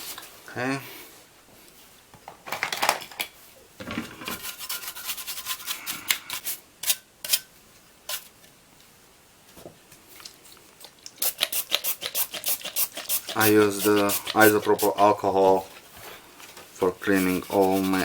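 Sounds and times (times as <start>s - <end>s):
scratchy scrubbing on circuit board: 4.4s - 5.8s, 17.0s - 18.0s.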